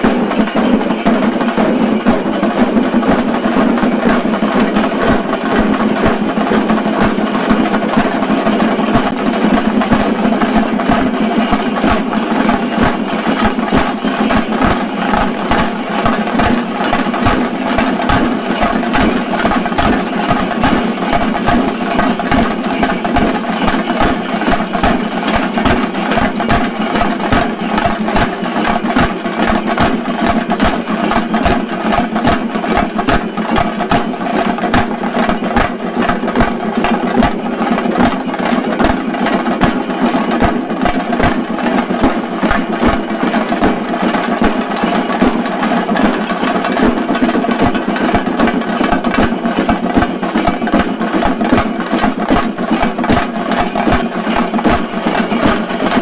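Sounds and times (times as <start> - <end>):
fast drum roll ensemble: 0.0 - 56.0.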